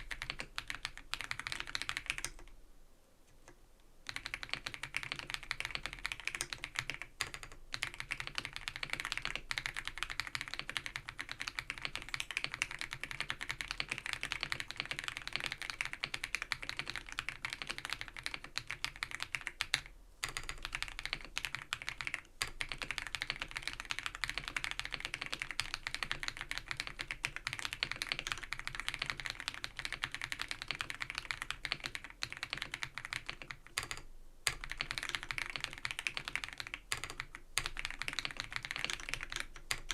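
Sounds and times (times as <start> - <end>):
fast typing on mechanical keyboard: 0.0 - 2.5, 4.1 - 39.9.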